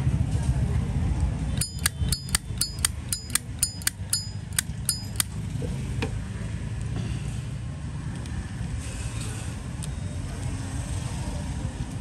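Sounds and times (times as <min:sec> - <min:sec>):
faint clicks: 0:01.6 - 0:05.3.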